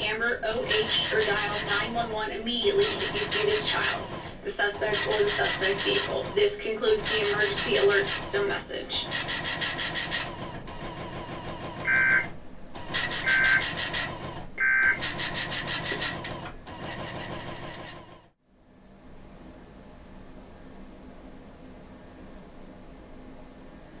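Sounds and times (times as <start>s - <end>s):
harsh rasping static: 0.0s - 10.6s, 11.8s - 16.3s
warbling two-tone data bursts: 11.9s - 12.3s, 13.0s - 13.7s.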